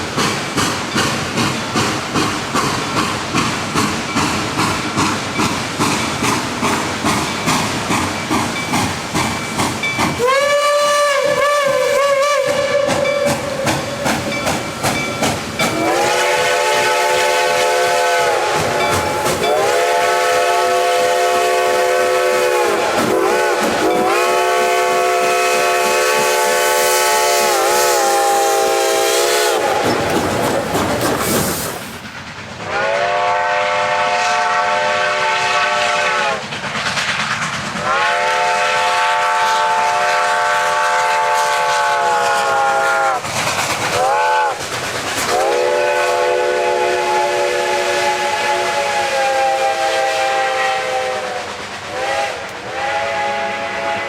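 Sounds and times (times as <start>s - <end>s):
steam hiss: 0.0s - 54.0s
steam whistle blasts: 10.2s - 14.3s, 15.7s - 30.0s, 32.7s - 36.4s, 37.8s - 43.2s, 44.0s - 44.6s, 45.3s - 54.0s.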